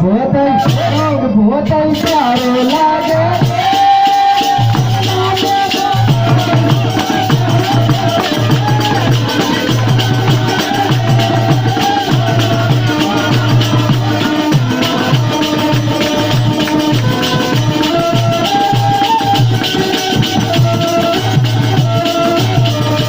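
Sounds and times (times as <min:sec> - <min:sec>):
low drum beat: 0:04.5 - 0:23.0
sustained melody notes: 0:04.7 - 0:23.0.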